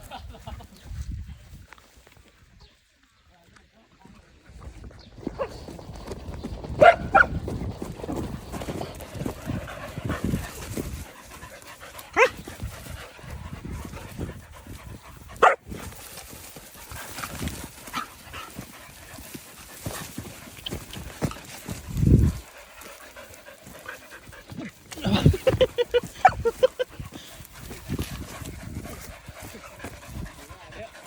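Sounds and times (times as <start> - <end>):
dogs barking: 6.8 - 7.4, 12.1 - 12.5, 15.4 - 15.7
dog panting: 7.8 - 31.0.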